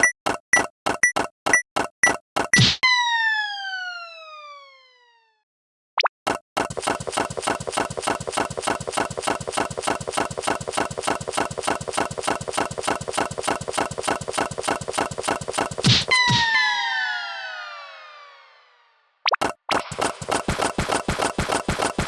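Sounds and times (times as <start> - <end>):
rapid mechanical rattle: 6.6 - 15.8.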